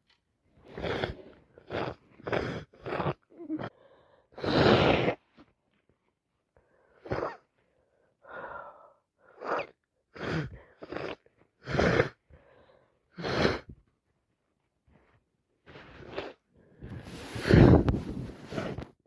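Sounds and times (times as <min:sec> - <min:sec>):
gasping breaths: 0:00.6 - 0:04.8, 0:06.6 - 0:13.8, 0:15.8 - 0:18.8.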